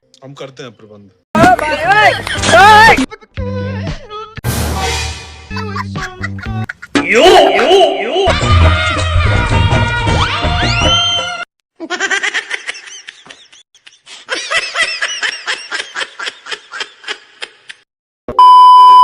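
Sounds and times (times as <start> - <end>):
laughter: 2.0 - 2.5, 5.5 - 7.0, 11.8 - 17.8
music: 2.1 - 6.7, 8.3 - 11.4
loud steady beep: 18.4 - 19.0.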